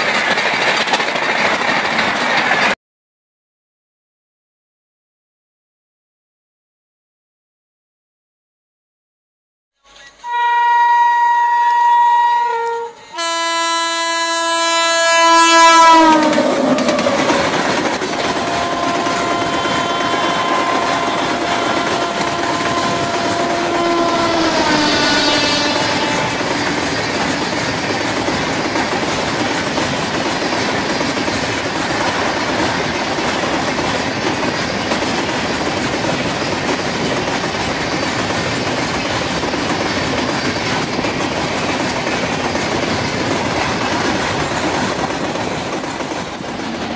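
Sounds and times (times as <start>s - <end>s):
train rumble: 0.0s - 2.8s, 12.6s - 46.9s
wheels clacking on rail joints: 0.0s - 2.8s, 15.7s - 46.9s
locomotive horn blasts: 10.2s - 17.2s, 18.3s - 26.6s.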